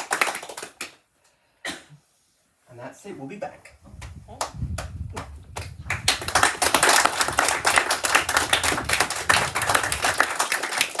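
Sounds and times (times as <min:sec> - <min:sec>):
people clapping: 0:00.0 - 0:01.0, 0:04.0 - 0:11.0.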